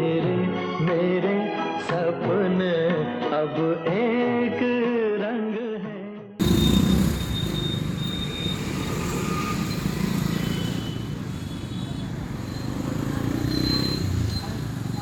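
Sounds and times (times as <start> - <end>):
traffic rumble: 6.4 - 15.0.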